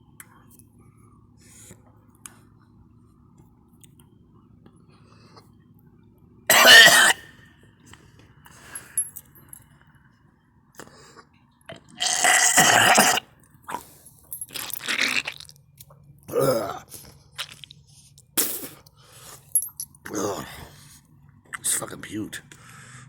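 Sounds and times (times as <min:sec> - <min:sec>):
person retching and vomiting: 0:06.5 - 0:07.2, 0:11.7 - 0:13.3, 0:14.5 - 0:15.6, 0:16.3 - 0:17.7.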